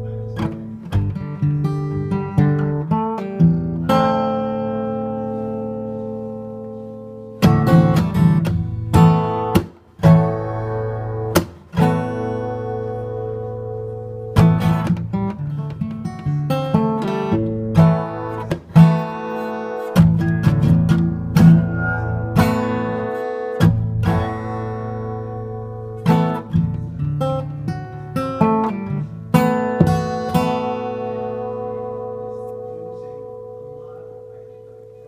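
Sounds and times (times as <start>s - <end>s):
acoustic guitar strumming: 0.0s - 35.0s.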